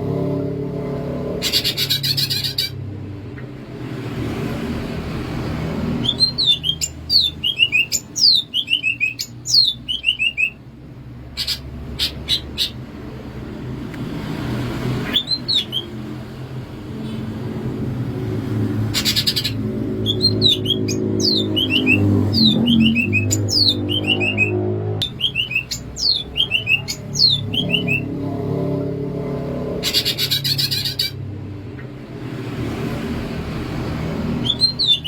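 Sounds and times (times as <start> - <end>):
bird singing whistles: 6.0 - 10.6, 15.1 - 16.0, 19.1 - 28.1, 34.4 - 35.0.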